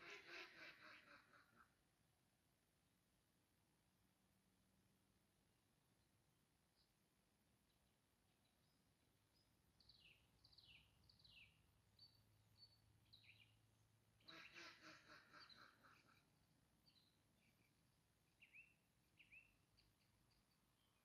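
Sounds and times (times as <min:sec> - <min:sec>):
faint songbird chirps: 0:05.6 - 0:21.0.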